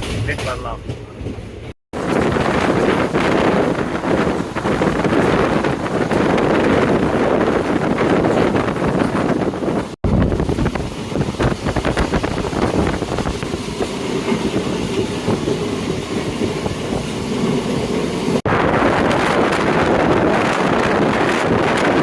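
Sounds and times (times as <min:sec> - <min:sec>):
train wheels clattering: 0:00.0 - 0:09.4
train and wind rush: 0:00.0 - 0:22.0.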